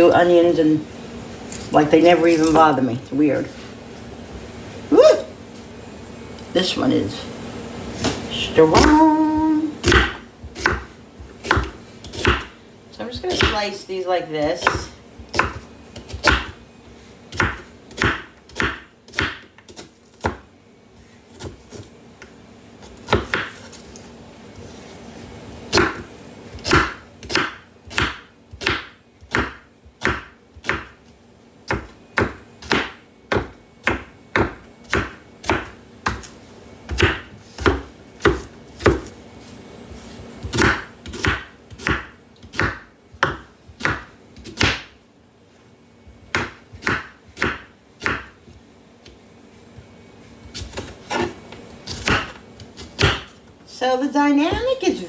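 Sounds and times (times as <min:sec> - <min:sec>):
knife chopping on cutting board: 0:09.8 - 0:12.5, 0:13.3 - 0:13.6, 0:14.6 - 0:16.6, 0:17.3 - 0:20.4, 0:22.8 - 0:23.8, 0:25.7 - 0:31.0, 0:31.7 - 0:39.1, 0:40.4 - 0:45.0, 0:46.3 - 0:49.2, 0:50.4 - 0:53.4.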